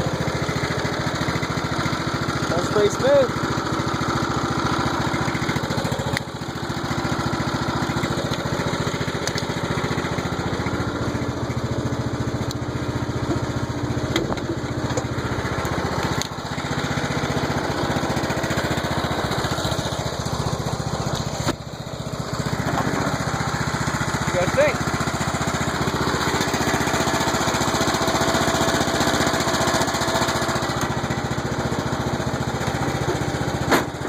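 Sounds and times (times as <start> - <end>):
mower engine running: 0.0 - 34.0.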